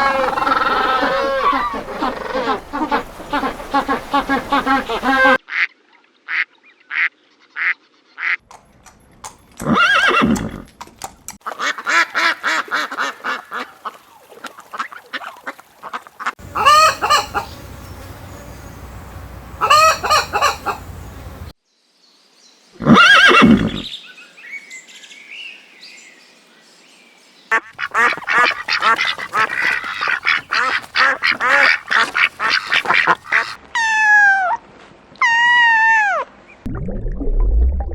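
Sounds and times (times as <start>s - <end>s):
poultry honking calls: 0.0s - 5.4s, 16.4s - 21.5s, 27.5s - 33.6s
poultry rapid chattering: 27.8s - 33.6s.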